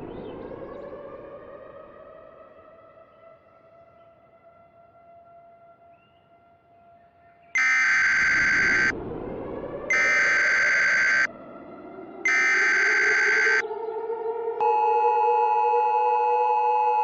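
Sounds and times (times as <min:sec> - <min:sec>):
low drone rising in pitch: 0:00.0 - 0:03.4, 0:07.6 - 0:17.0
buzzy data bursts: 0:07.6 - 0:08.9, 0:09.9 - 0:11.3.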